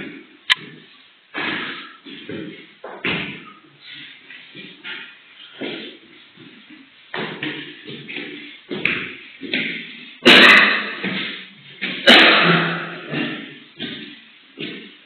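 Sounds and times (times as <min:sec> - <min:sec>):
person coughing harshly: 0:10.2 - 0:10.9, 0:12.0 - 0:14.0.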